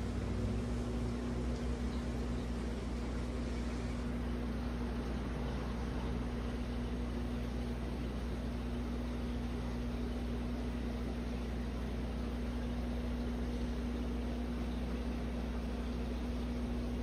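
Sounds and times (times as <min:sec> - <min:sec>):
aquarium air pumps humming: 0:00.0 - 0:17.0.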